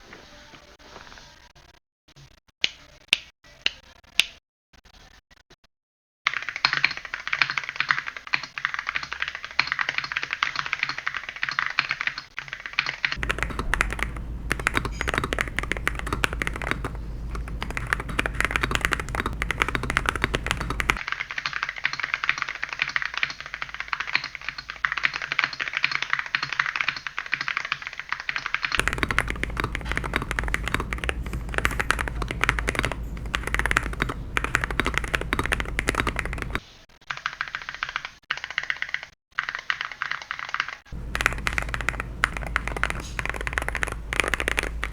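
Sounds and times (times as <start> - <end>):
mechanical keyboard typing: 6.3 - 21.1, 28.4 - 44.9.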